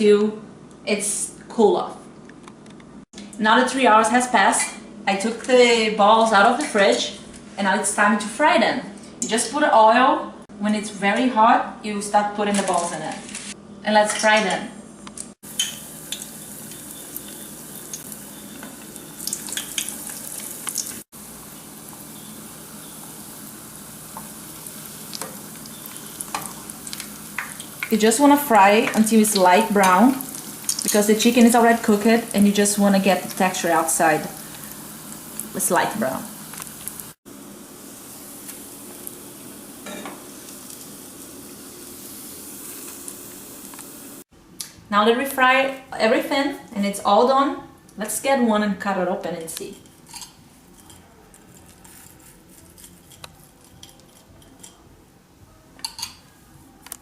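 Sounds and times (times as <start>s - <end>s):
food deep-frying in oil: 15.4s - 44.2s.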